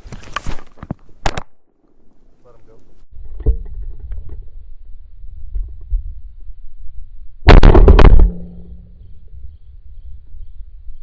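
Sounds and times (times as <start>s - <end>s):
wind rumbling on microphone: 3.1s - 11.0s.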